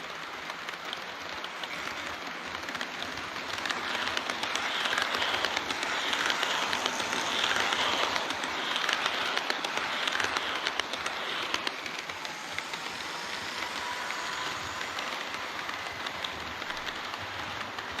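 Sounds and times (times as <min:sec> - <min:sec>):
model train wheels rattling: 0:00.0 - 0:18.0.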